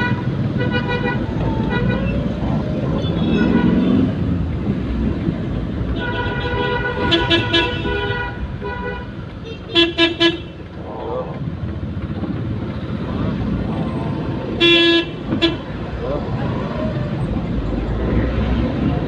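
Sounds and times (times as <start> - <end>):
engine and road noise: 0.0 - 19.0
vehicle horn honking: 6.0 - 10.6, 14.6 - 15.7.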